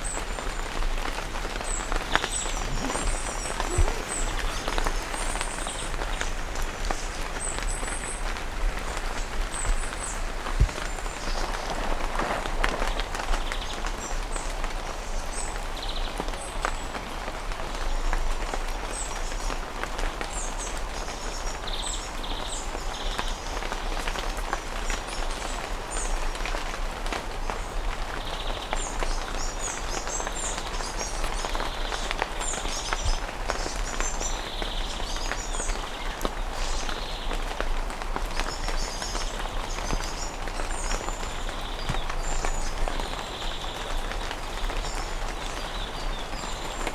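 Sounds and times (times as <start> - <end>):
birds chirping: 0.0 - 14.1
rain falling on foliage: 0.0 - 46.9.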